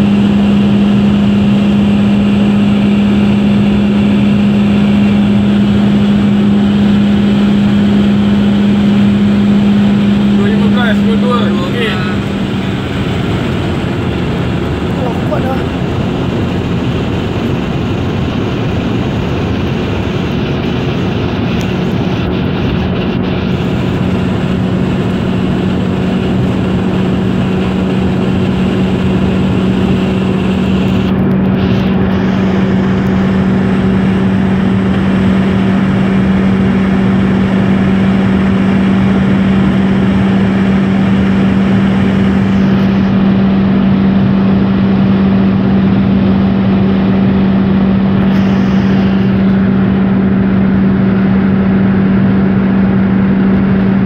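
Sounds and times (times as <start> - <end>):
car engine drone: 0.0 - 54.0
road and wind noise: 0.0 - 54.0.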